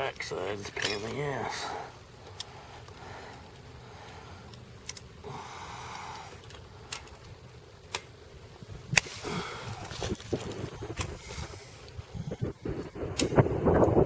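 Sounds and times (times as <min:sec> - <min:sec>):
low background rumble: 0:00.0 - 0:14.0.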